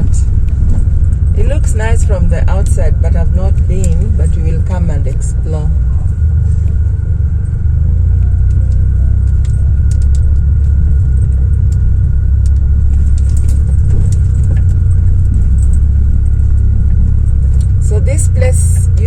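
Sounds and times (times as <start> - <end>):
car engine and tyre rumble: 0.0 - 19.0
light clicks and rattles: 8.4 - 19.0.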